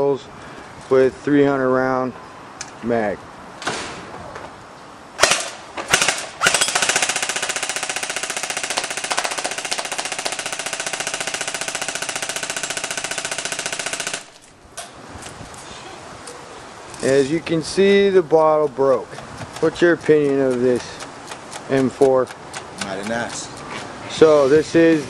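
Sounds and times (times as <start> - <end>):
airsoft rifle firing bursts: 5.2 - 14.4.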